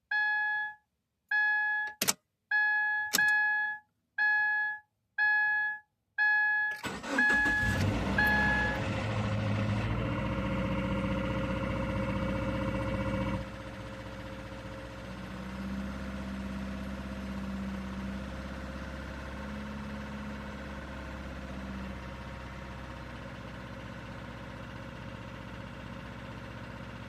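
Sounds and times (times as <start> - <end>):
car warning chime: 0.1 - 8.8
car engine cranking and idling: 6.8 - 27.0.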